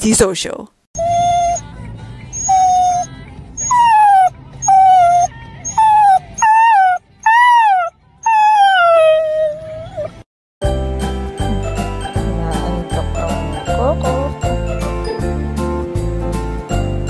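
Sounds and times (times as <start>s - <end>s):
dog whining and howling: 1.0s - 1.7s, 2.3s - 10.2s.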